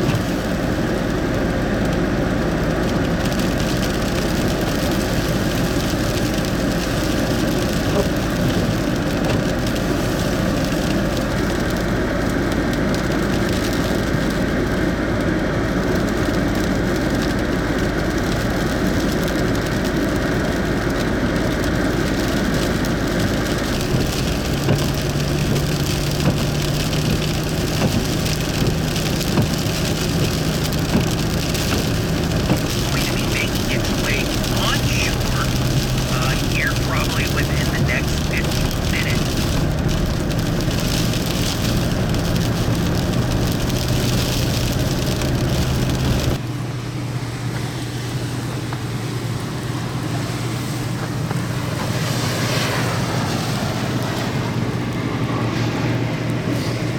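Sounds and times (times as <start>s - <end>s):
tyres hissing on wet road: 0.0s - 46.4s, 47.2s - 56.9s
car engine: 20.3s - 46.4s.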